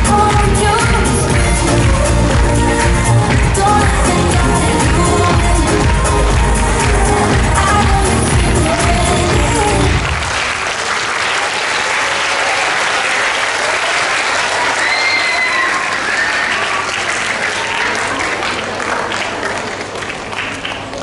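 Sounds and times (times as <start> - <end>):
music: 0.0 - 10.4
audience applauding: 1.2 - 21.0.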